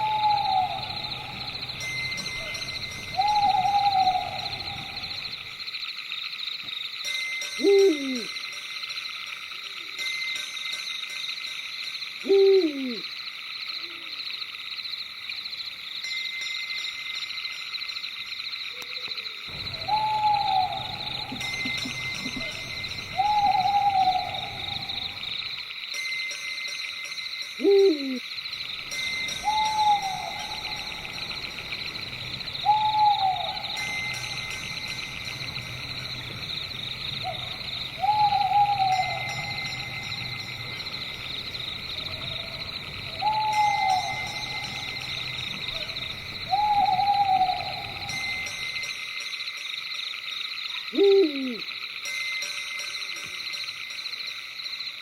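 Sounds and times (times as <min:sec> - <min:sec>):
owl hooting: 0:00.0 - 0:05.4, 0:07.6 - 0:08.3, 0:12.2 - 0:13.0, 0:19.6 - 0:25.4, 0:27.6 - 0:28.2, 0:29.2 - 0:35.9, 0:36.7 - 0:48.5, 0:50.9 - 0:51.7
high-pitched night chorus: 0:00.0 - 0:06.4, 0:07.0 - 0:10.5, 0:11.4 - 0:16.5, 0:17.9 - 0:55.0.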